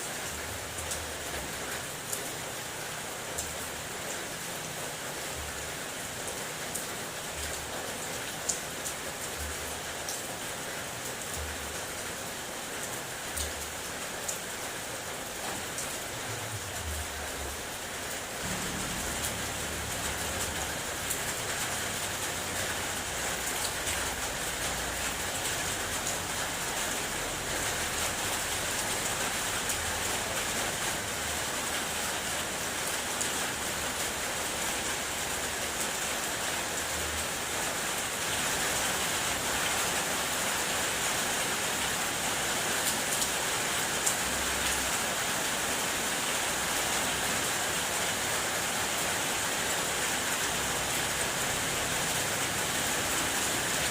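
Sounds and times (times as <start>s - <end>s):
rain drumming on car roof: 15.1s - 37.6s.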